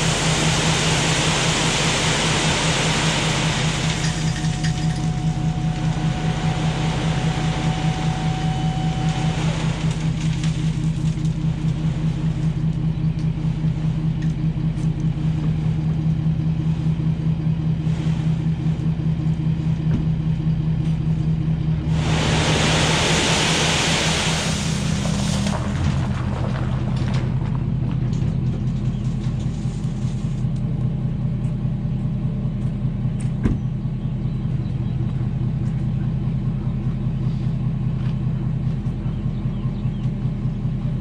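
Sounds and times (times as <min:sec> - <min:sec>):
tyres hissing on wet road: 0:00.0 - 0:10.2, 0:21.9 - 0:27.0
pickup engine drone: 0:00.0 - 0:41.0.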